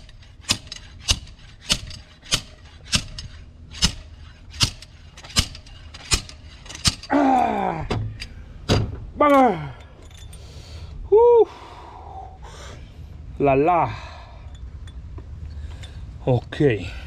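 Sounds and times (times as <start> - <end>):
person groaning: 7.1 - 7.9, 9.2 - 9.8.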